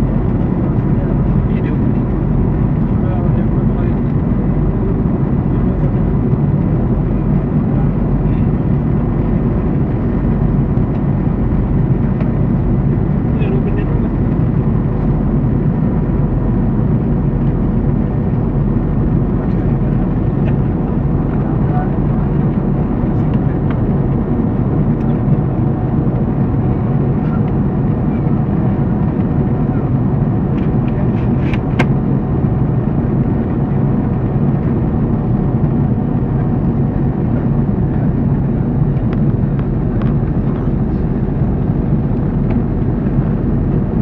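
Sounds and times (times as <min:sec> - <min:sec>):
airliner cabin engine rumble: 0:00.0 - 0:44.0.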